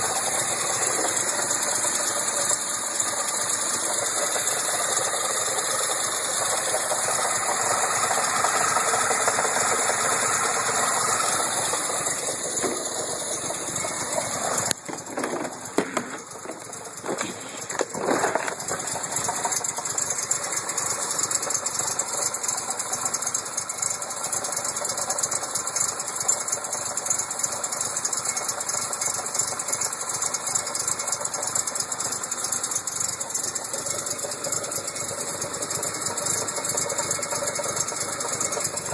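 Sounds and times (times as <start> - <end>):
car engine running: 0.0 - 27.1
clunking knock: 12.5 - 19.0.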